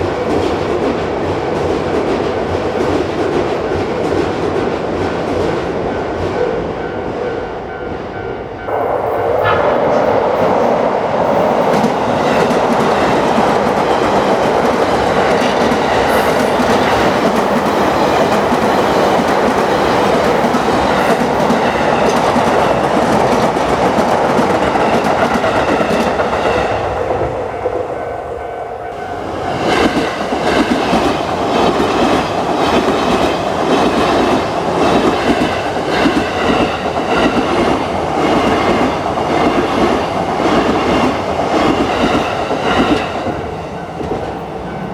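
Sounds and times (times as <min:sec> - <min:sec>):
electric train passing: 0:00.0 - 0:44.9
wheels clacking over rail joints: 0:08.7 - 0:27.3.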